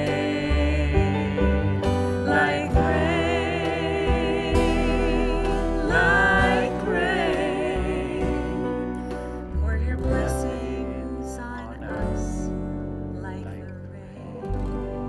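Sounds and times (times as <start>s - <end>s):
singers with vibrato: 0.0s - 9.1s
live band playing slow song: 0.0s - 13.2s
steady bass line: 0.0s - 15.0s.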